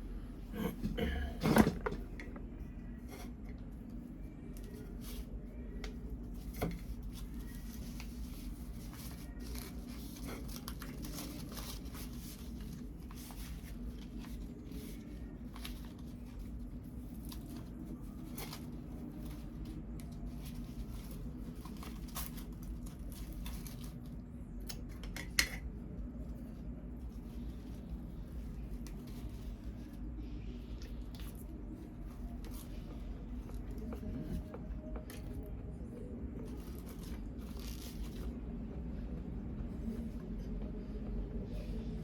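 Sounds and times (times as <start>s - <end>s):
leaf wrapper crinkling and tearing: 5.9s - 24.9s, 36.5s - 38.4s.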